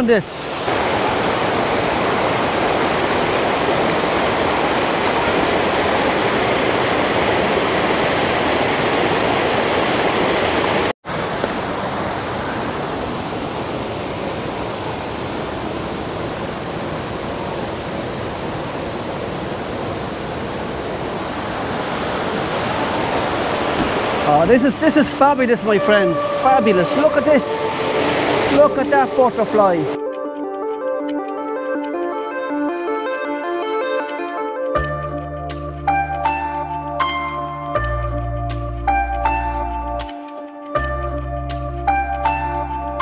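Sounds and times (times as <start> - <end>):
waterfall rushing over rocks: 0.0 - 30.0.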